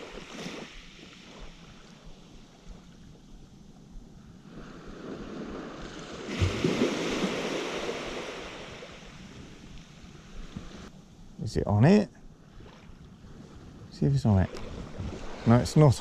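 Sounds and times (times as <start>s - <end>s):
wave crashing on beach: 6.2s - 9.2s.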